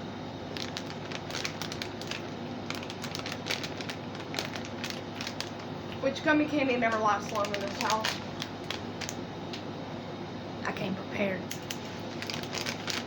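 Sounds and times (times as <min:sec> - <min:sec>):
plastic wrapper crinkling: 0:00.5 - 0:06.0, 0:06.8 - 0:09.2, 0:11.5 - 0:13.0.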